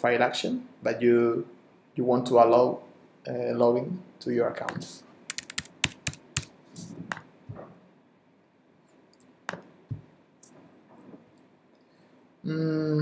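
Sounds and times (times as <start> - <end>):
computer key clicks: 5.3 - 6.5.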